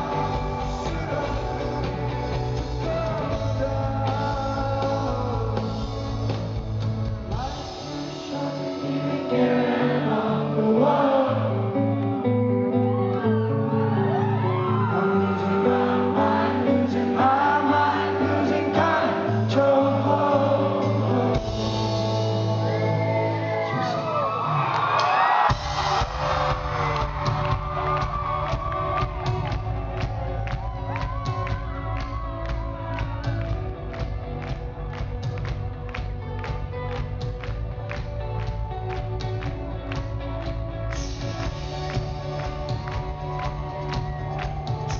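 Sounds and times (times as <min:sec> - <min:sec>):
bass and drums beat: 0:00.0 - 0:08.2, 0:20.8 - 0:23.4, 0:25.5 - 0:44.9
person singing: 0:00.0 - 0:24.6
guitar and keyboard chords: 0:00.0 - 0:44.9.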